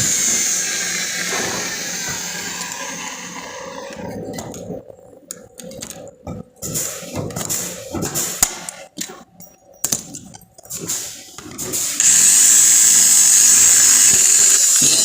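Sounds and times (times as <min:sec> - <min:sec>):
power tool whining: 0:00.0 - 0:04.0, 0:12.0 - 0:15.0.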